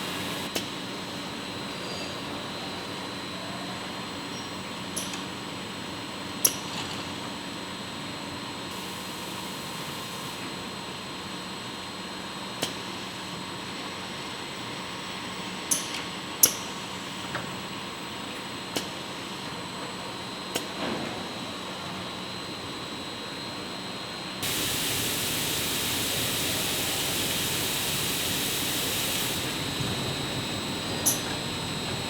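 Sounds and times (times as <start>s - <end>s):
grinding machine humming: 0.0s - 0.5s, 24.4s - 32.0s
loud steady hiss: 0.0s - 0.5s, 8.7s - 10.4s, 24.4s - 32.0s.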